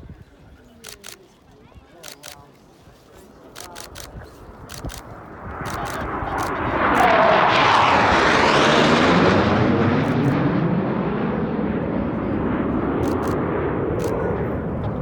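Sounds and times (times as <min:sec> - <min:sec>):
jet engines roaring: 0:04.1 - 0:15.0.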